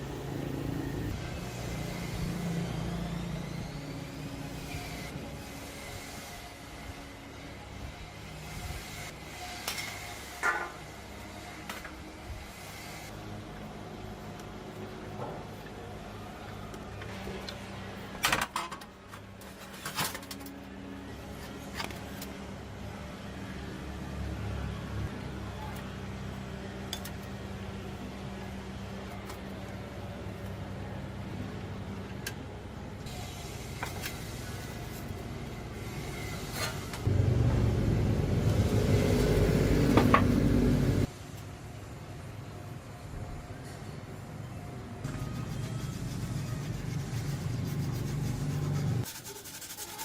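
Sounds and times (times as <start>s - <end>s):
low hum: 37.1s - 41.1s.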